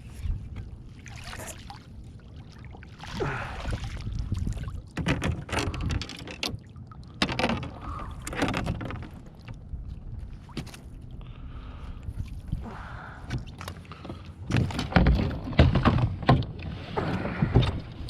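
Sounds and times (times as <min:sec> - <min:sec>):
steady low rumble: 0:00.0 - 0:05.0, 0:09.1 - 0:14.8
water splashing and sloshing: 0:00.0 - 0:18.0.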